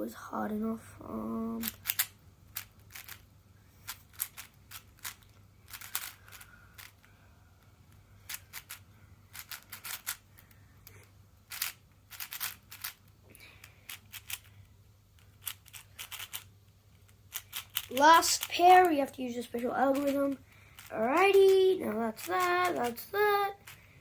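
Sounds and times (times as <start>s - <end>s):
puzzle cube clicking: 1.6s - 3.2s, 3.9s - 7.1s, 8.3s - 13.0s, 13.9s - 14.6s, 15.2s - 19.0s, 19.9s - 21.6s, 22.2s - 23.8s.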